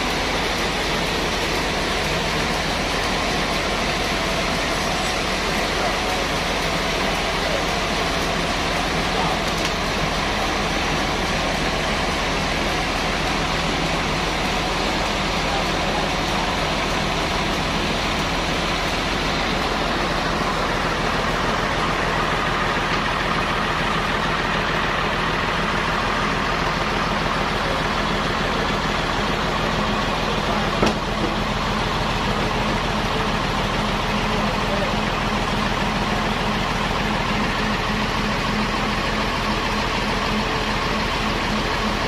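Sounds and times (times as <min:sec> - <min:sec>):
sawmill machinery hum: 0:00.0 - 0:42.0.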